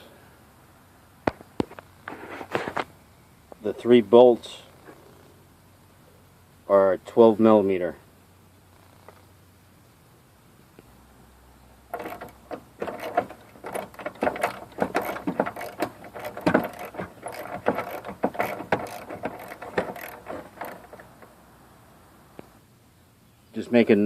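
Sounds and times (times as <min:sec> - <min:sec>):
ratchet wrench clicking: 0:11.9 - 0:21.2.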